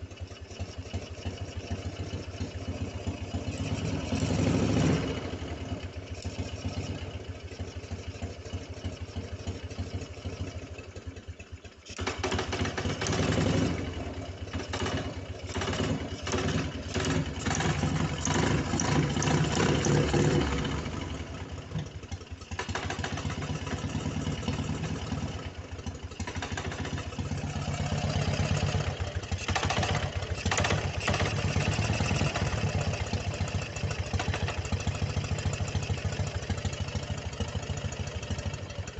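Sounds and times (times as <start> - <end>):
engine running with a knock: 14.6 - 21.0, 21.6 - 24.9, 26.2 - 27.1.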